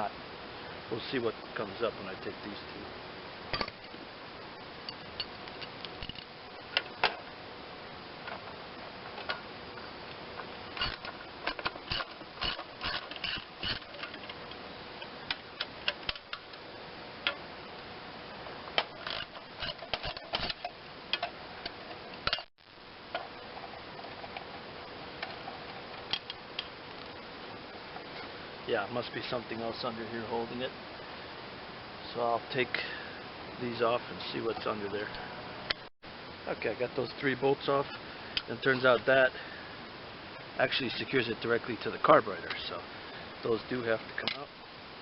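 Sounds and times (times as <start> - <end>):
faint steady hum: 0.0 - 45.0
hand tools clicking on metal: 10.8 - 14.4.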